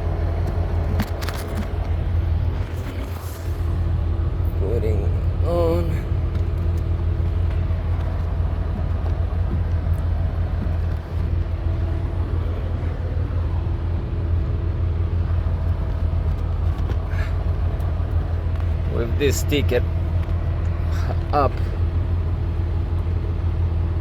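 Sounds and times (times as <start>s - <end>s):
air filter clicks and rustles: 0.0s - 3.7s, 6.2s - 14.6s, 15.3s - 21.8s
engine idling: 0.0s - 24.0s.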